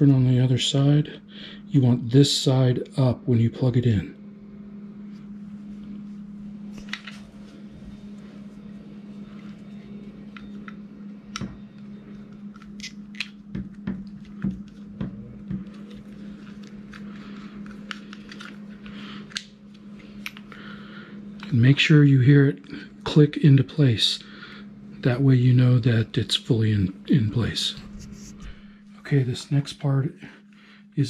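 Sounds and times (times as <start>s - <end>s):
steady low hum: 0.0s - 31.0s
plastic parts clicking and rustling: 15.8s - 18.6s.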